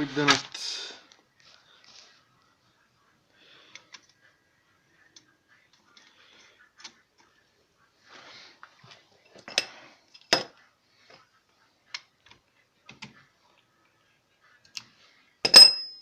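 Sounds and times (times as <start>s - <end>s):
wrench and wheel nut clinking: 15.5s - 16.0s.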